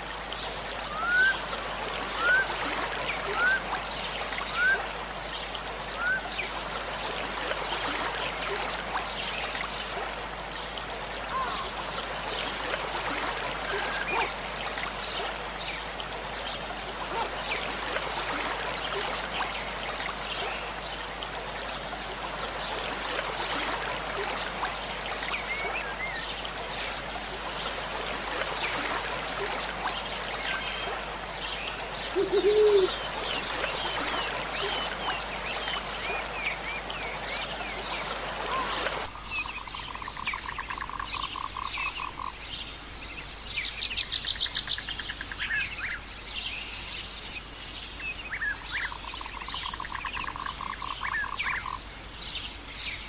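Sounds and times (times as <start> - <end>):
babbling stream: 0.0 - 53.0
bird whistling rising calls: 0.9 - 1.4, 30.4 - 33.9
high faint buzz: 26.2 - 34.5
faint bird chirps: 30.2 - 34.9.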